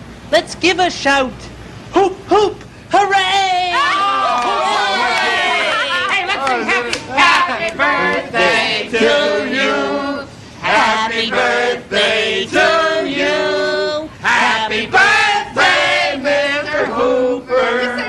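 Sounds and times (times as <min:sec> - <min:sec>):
group of people singing: 0:05.3 - 0:18.0.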